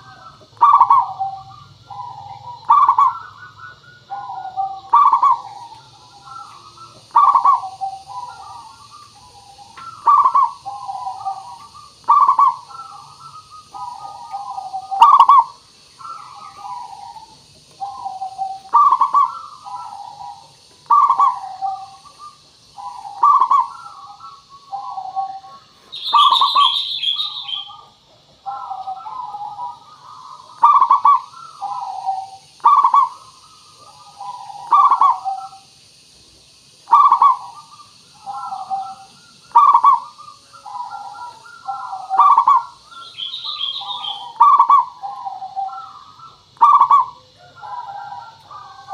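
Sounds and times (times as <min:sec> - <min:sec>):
dove cooing: 0:00.0 - 0:36.0, 0:36.8 - 0:48.9
bird chirps: 0:00.0 - 0:48.9
steady high hiss: 0:00.0 - 0:48.9.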